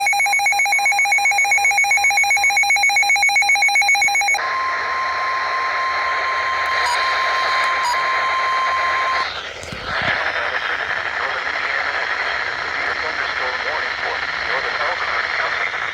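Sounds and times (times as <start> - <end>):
electronic alarm warbling: 0.0 - 9.4
steady warning tone: 0.0 - 10.1.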